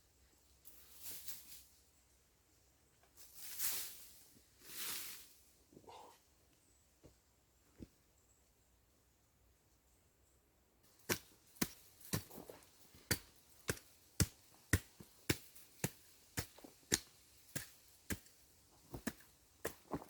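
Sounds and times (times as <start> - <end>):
axe chopping strikes: 11.0 - 18.4, 19.0 - 20.0.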